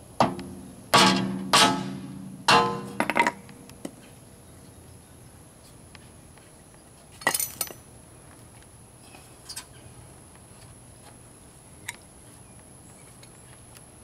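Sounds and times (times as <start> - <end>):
tools clinking against metal: 7.2 - 7.8.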